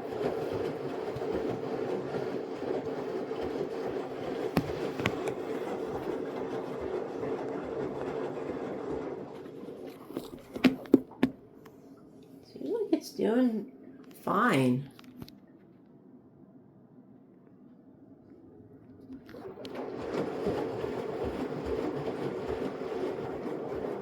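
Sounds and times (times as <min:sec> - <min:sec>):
washing machine drum motor humming: 0:00.0 - 0:11.7, 0:19.2 - 0:24.0.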